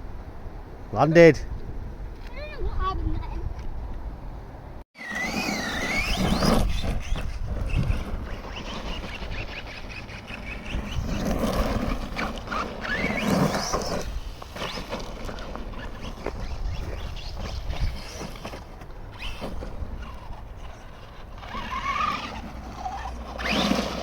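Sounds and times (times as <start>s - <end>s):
toy truck electric motor whining: 5.0s - 24.0s.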